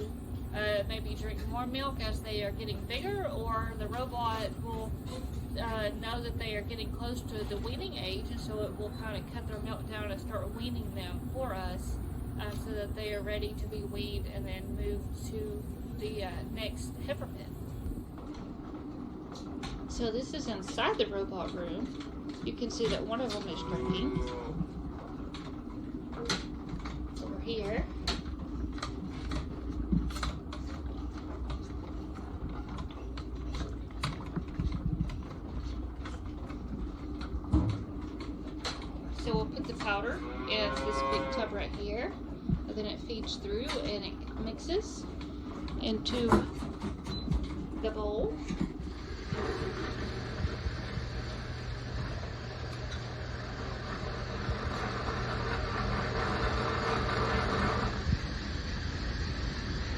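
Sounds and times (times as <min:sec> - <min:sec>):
calf feeder humming: 0:00.0 - 0:18.0, 0:23.2 - 0:24.8, 0:38.8 - 0:42.1, 0:47.9 - 0:59.9
whirring noise: 0:00.0 - 0:59.9.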